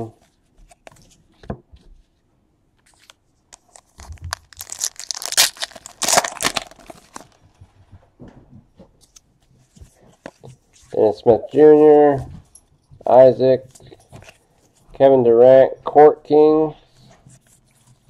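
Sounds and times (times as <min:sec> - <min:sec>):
wrapper tearing and crinkling: 0:03.6 - 0:07.4.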